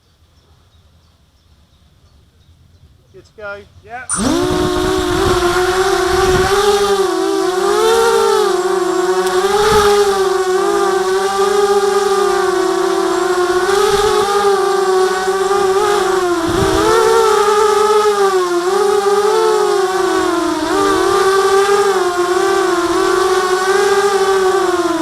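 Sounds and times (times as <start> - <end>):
quadcopter motors whining: 3.3 - 25.0.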